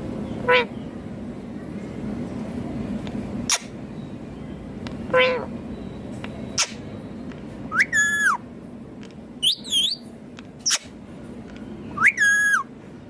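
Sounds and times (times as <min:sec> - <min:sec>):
parakeet calling: 0:00.3 - 0:00.9, 0:03.4 - 0:03.8, 0:05.0 - 0:05.6, 0:06.5 - 0:07.0, 0:07.7 - 0:08.4, 0:09.4 - 0:11.0, 0:11.9 - 0:12.7
parakeet whistled notes: 0:07.7 - 0:08.4, 0:09.4 - 0:10.0, 0:12.0 - 0:12.7
wavering high bird call: 0:07.7 - 0:08.4, 0:09.4 - 0:10.9, 0:11.9 - 0:12.7.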